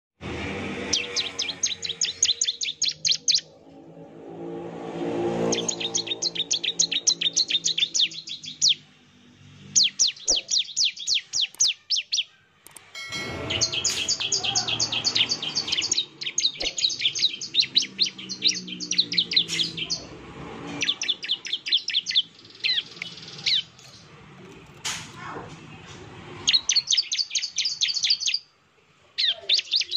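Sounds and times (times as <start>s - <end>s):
low drone: 0.2s - 9.9s, 12.8s - 26.5s
bird singing sharp high notes: 0.8s - 24.1s, 26.4s - 28.5s.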